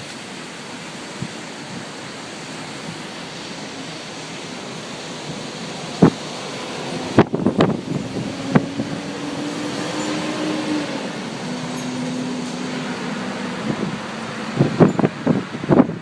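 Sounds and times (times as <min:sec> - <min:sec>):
street traffic: 0:00.0 - 0:16.0
wind buffeting microphone: 0:05.2 - 0:16.0.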